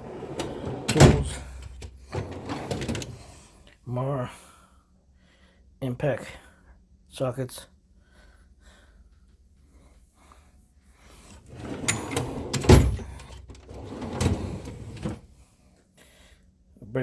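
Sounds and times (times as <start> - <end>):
metal drawer sliding: 0.0 - 3.4, 11.3 - 15.3.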